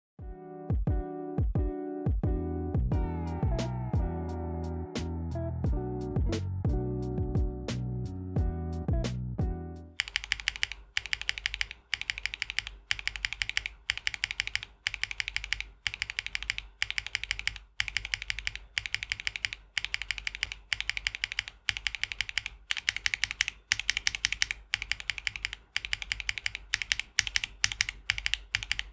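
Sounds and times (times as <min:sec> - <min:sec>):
mechanical keyboard typing: 0:10.0 - 0:28.9.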